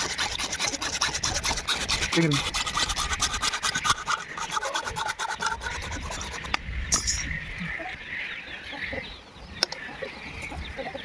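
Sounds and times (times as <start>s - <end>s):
tool rasping plastic pipe: 0.0s - 7.2s.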